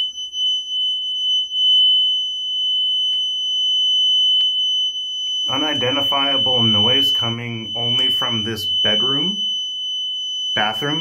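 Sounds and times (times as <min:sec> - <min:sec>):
toilet high-pitched whistle: 0:00.0 - 0:00.6.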